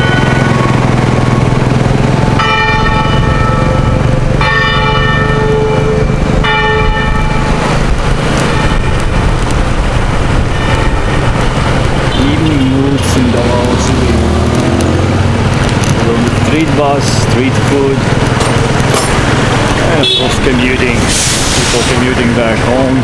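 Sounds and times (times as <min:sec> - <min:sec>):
street noise: 0:00.0 - 0:23.0
bell ringing: 0:02.4 - 0:07.6, 0:18.3 - 0:20.3.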